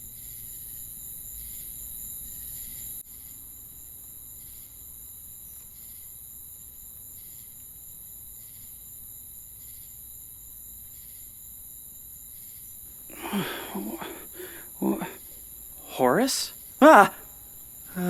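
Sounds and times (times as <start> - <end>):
crickets chirping: 0.0 - 18.0
short voice sound: 13.1 - 15.2, 15.8 - 17.2.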